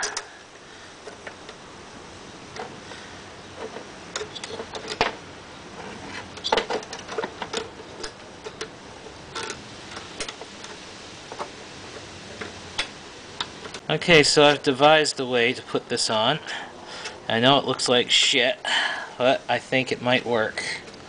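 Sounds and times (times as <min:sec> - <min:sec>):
small metal hardware clinking: 0:00.0 - 0:00.3.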